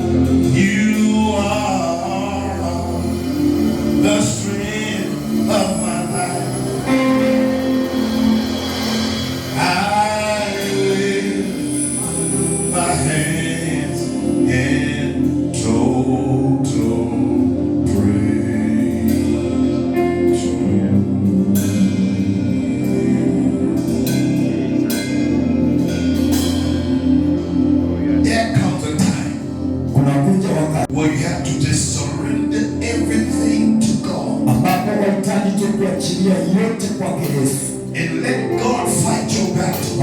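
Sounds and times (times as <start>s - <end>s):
gospel singing over chords: 0.0s - 40.0s.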